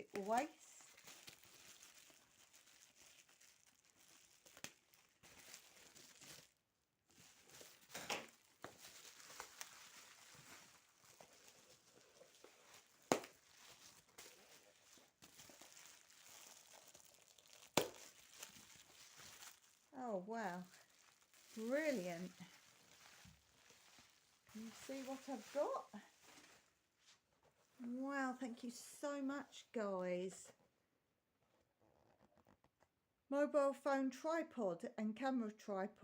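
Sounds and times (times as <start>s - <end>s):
bubble wrap crinkling: 0.0s - 28.0s.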